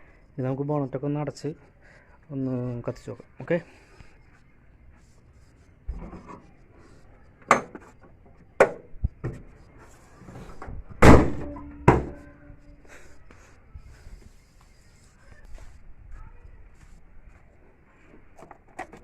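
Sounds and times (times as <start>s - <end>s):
car bonnet slamming shut: 11.0s - 12.2s.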